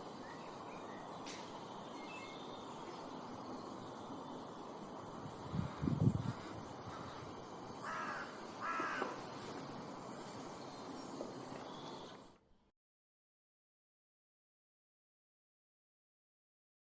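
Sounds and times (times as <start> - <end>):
outdoor background hiss: 0.0 - 12.7
crow cawing: 6.8 - 9.2.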